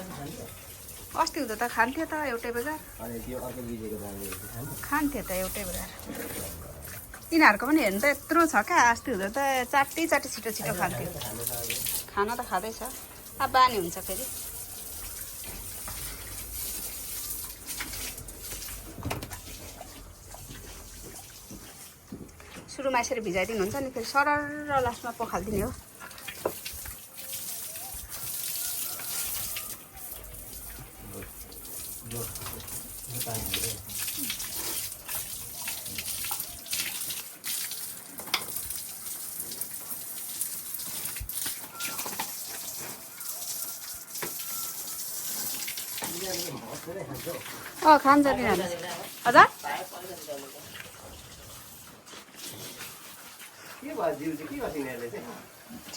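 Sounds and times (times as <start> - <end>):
hose water splashing on floor: 0.0 - 55.9.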